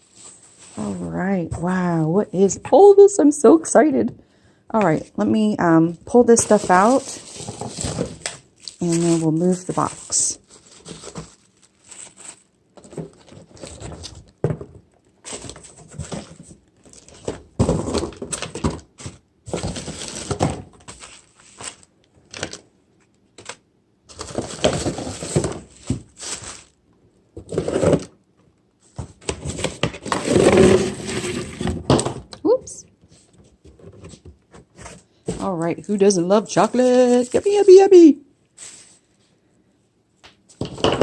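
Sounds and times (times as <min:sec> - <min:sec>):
wrapping paper rustling: 0:06.2 - 0:14.3, 0:18.2 - 0:22.6, 0:23.4 - 0:26.8, 0:34.8 - 0:39.3.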